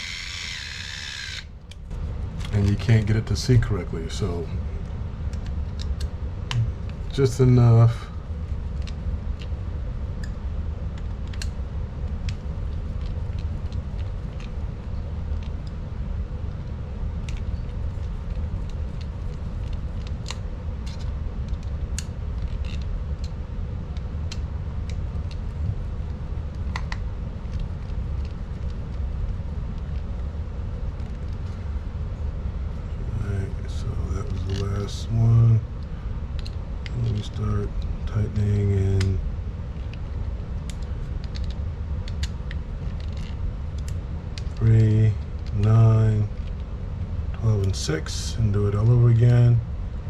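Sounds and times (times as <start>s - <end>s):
steady low rumble: 0.0s - 50.0s
screwdriver and small parts clicking: 17.2s - 23.4s.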